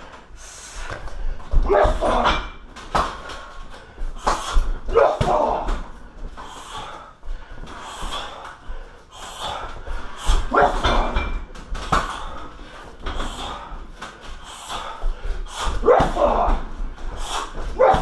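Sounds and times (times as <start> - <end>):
punches thudding on heavy bag: 4.3 - 5.9, 15.8 - 16.7, 17.5 - 18.0.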